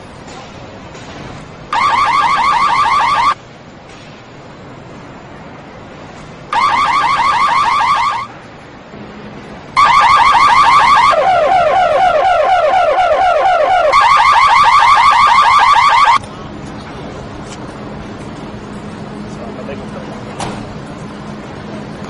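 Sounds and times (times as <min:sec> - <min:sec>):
car alarm chirping: 0:01.7 - 0:03.4, 0:06.5 - 0:08.3, 0:09.8 - 0:16.2.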